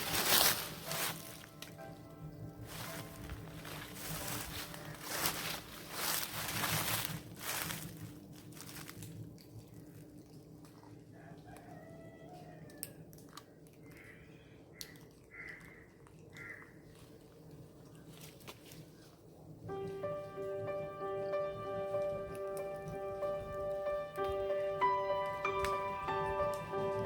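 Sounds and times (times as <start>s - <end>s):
crunching and rustling: 0.0s - 11.7s, 14.8s - 20.0s.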